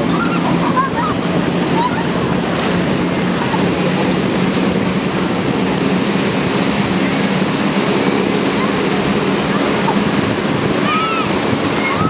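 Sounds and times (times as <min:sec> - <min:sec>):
propeller plane engines droning: 0:00.0 - 0:12.0
surf: 0:00.0 - 0:12.0
wind: 0:00.0 - 0:12.0.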